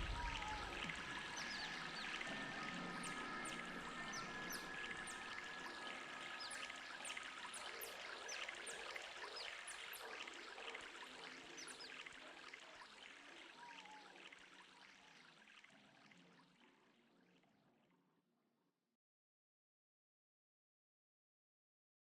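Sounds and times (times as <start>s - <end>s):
ambient electronic music: 0.0s - 12.1s.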